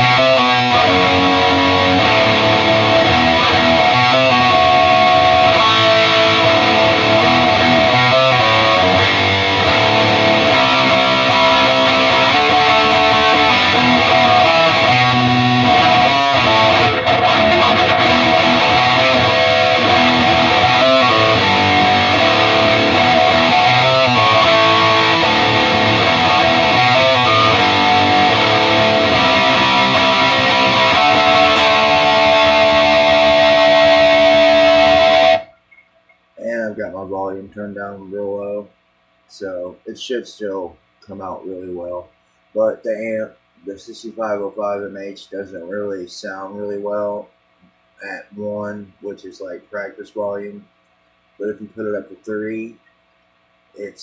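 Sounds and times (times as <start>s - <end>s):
distorted electric guitar: 0.0s - 35.6s.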